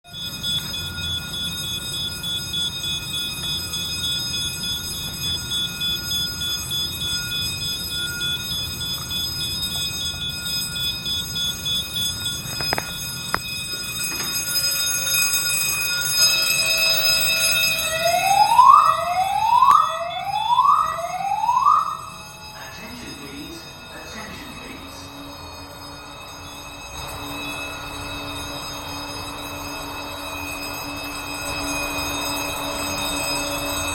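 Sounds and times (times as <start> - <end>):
alarm rising whoop: 0.1 - 33.9
pulsing electronic tone: 16.6 - 33.9.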